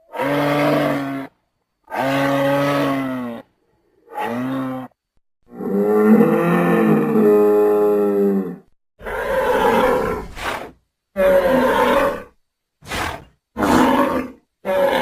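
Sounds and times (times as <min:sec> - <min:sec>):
large creature calling: 0:12.9 - 0:15.0.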